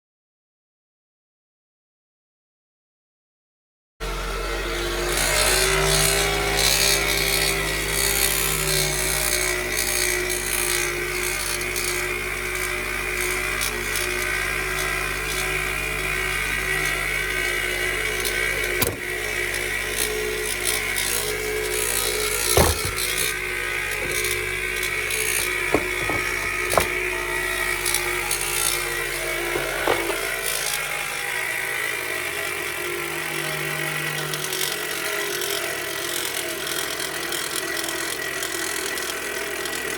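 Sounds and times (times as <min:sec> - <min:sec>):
rough rasping noise: 0:05.5 - 0:30.7.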